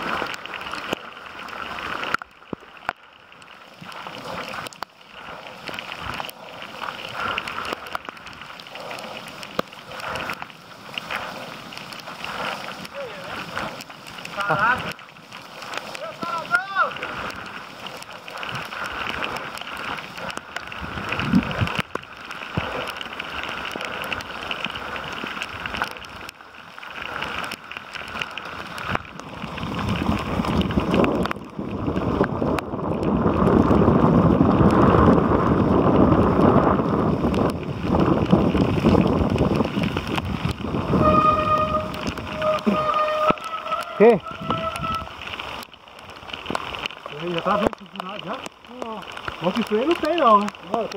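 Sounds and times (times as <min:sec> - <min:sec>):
rain: 0:00.0 - 0:50.9
water splashing: 0:00.0 - 0:50.9
wind buffeting microphone: 0:16.9 - 0:26.3, 0:28.0 - 0:46.6.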